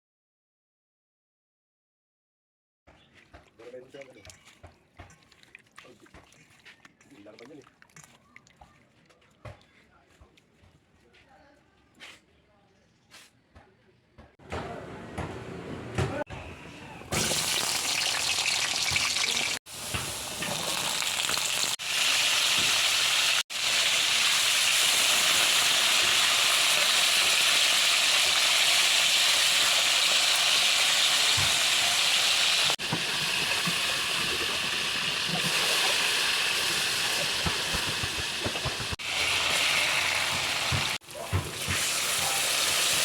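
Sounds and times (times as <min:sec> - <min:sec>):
food sizzling in frying pan: 0:17.2 - 0:43.0.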